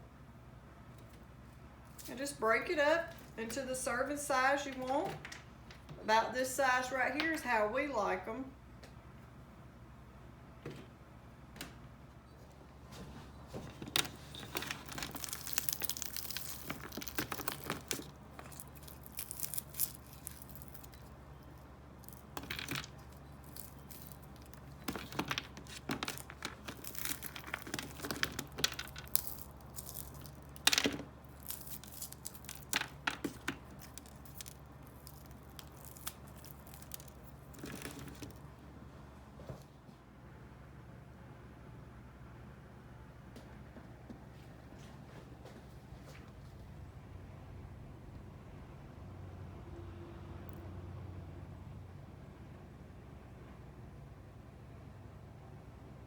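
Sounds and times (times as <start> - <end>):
toffee snapping and cracking: 14.4 - 38.4.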